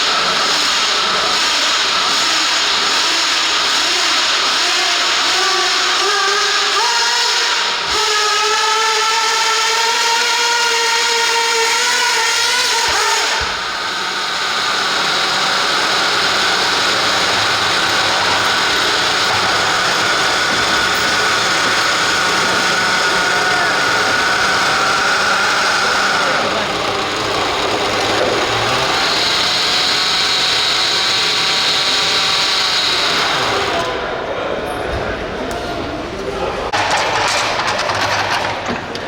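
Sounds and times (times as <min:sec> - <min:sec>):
rough noisy motor: 0:00.0 - 0:34.2
electric motor whining: 0:11.1 - 0:34.0.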